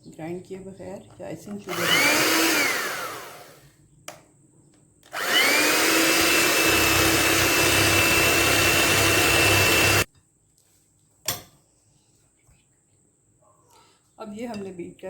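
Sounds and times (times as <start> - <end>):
electric beater whining: 1.6 - 3.6, 5.1 - 10.1.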